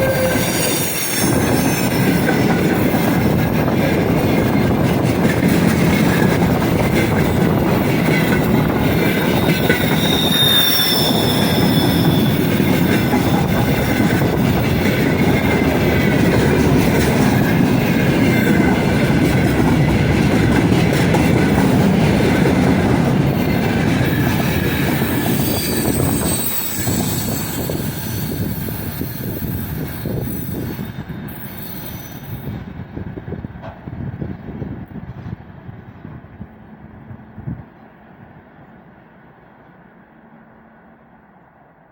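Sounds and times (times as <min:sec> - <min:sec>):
high wheel squeals: 0:00.0 - 0:03.3, 0:08.1 - 0:19.3, 0:23.3 - 0:32.6
train wheels rumbling on track: 0:00.0 - 0:41.9.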